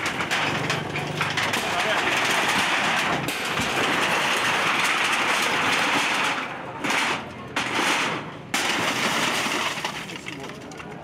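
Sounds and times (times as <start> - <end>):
demolition machinery clattering: 0.0 - 11.0.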